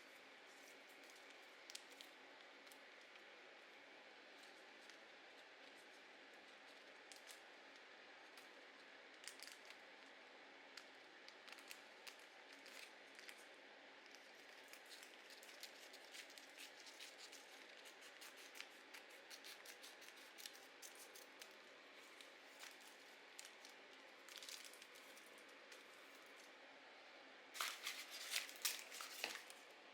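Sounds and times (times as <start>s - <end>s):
scissors cutting paper: 14.5s - 23.6s, 27.6s - 29.6s.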